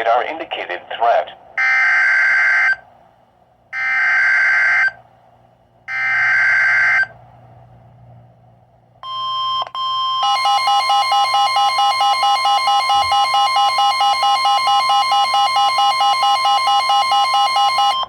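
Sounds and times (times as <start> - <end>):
steady electronic warning tone: 9.0 - 18.0.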